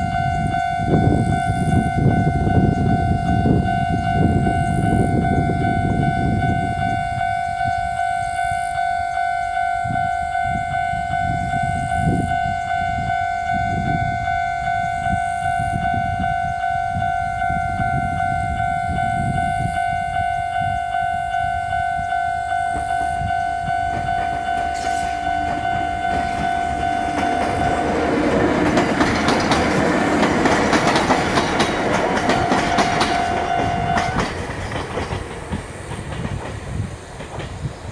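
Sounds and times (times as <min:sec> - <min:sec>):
level crossing bell dinging: 0:14.4 - 0:28.4, 0:32.2 - 0:34.2
train wheels clattering over joints: 0:23.9 - 0:37.9.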